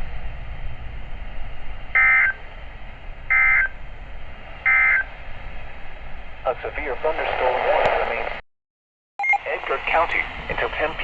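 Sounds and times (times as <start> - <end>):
faint radio hiss: 6.4 - 8.4, 9.4 - 11.0.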